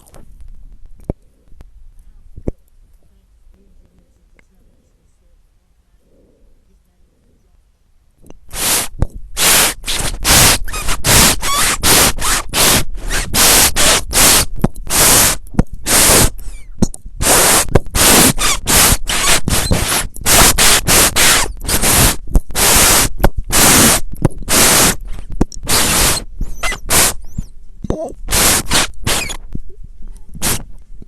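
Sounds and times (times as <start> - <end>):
harsh static noise bursts: 0.0 - 1.0, 8.2 - 31.0.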